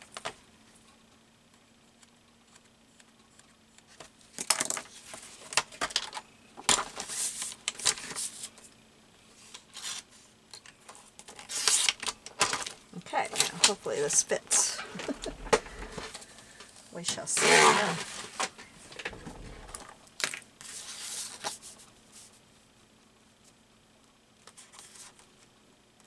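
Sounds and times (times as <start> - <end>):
paper rustling and clicking: 10.6 - 16.2.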